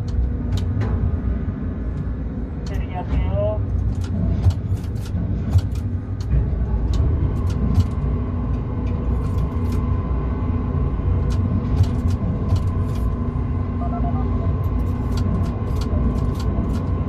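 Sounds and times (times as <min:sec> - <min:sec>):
crane low rumble: 0:00.0 - 0:17.0
faint steady whine: 0:05.8 - 0:17.0.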